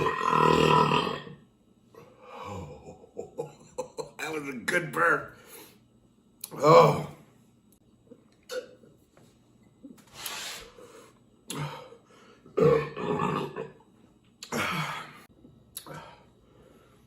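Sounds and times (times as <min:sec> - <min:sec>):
person burping: 0:00.0 - 0:01.4, 0:06.5 - 0:07.2, 0:08.5 - 0:08.9, 0:12.5 - 0:13.8, 0:14.4 - 0:15.2.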